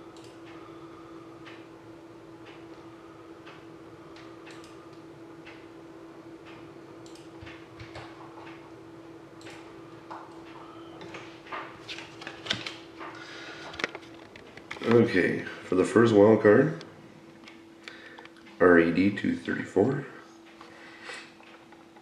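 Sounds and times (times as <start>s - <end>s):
steady electrical hum: 0.0s - 22.0s
keyboard and mouse clicking: 4.5s - 5.0s, 7.0s - 8.6s.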